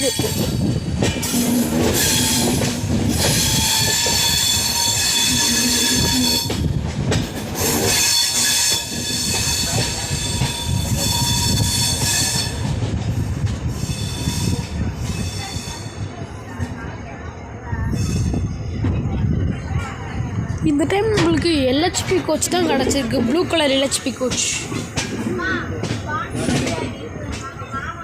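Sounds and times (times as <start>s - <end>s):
train wheels squealing on rails: 0.0s - 20.6s
heavy train rumble: 0.0s - 28.0s.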